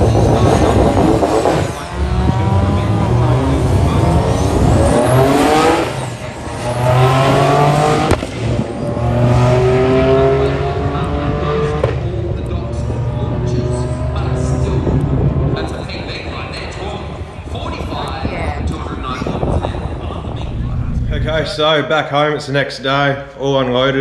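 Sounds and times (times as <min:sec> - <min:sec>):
car engine accelerating hard: 0:00.0 - 0:17.8
high whine: 0:20.0 - 0:22.0.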